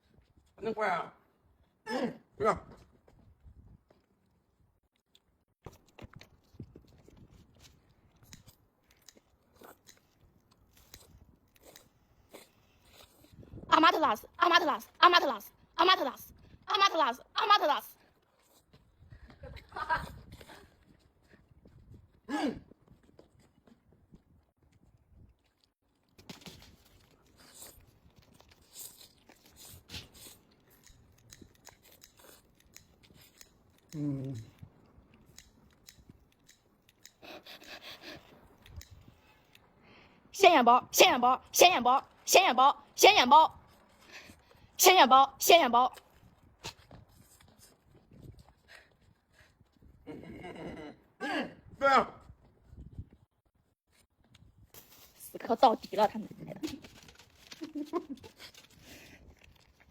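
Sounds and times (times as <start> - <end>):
crunchy biting and chewing: 5.0 - 13.6, 18.0 - 19.1, 20.0 - 39.7, 46.0 - 50.0, 56.8 - 59.9.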